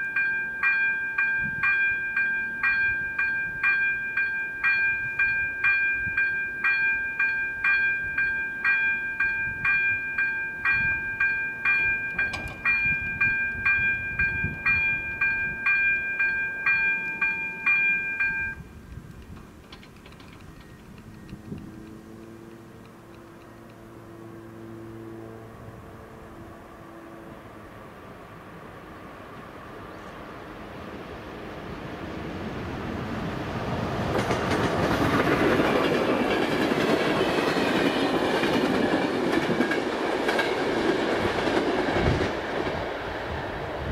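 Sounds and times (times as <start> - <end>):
bell ringing rapidly: 0.2 - 18.6.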